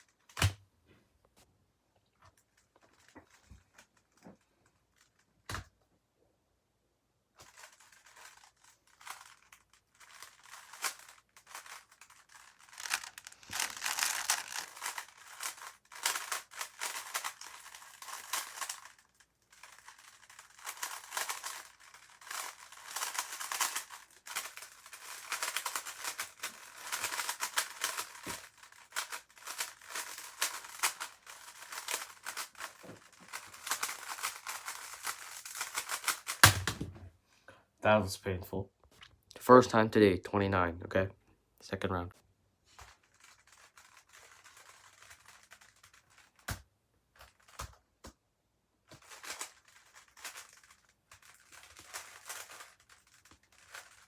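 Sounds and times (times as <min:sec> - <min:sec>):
puzzle cube plastic clicks: 0:07.4 - 0:36.8, 0:42.8 - 0:46.6, 0:48.9 - 0:54.0.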